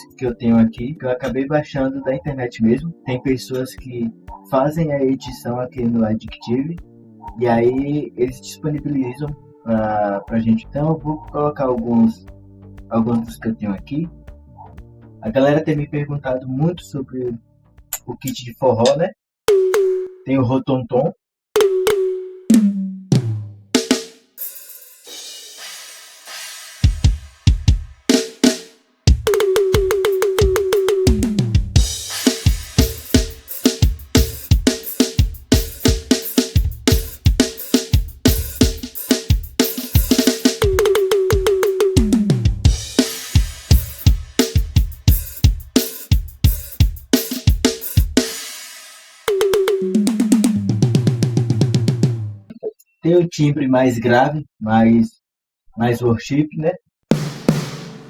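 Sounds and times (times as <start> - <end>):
tom drum hits: 21.6 - 24.1, 26.8 - 52.4, 57.1 - 58.0
crash cymbal: 24.0 - 28.8, 31.8 - 40.4, 42.7 - 49.3
bass drum strokes: 29.1 - 48.2
ringing cymbal: 42.7 - 49.4.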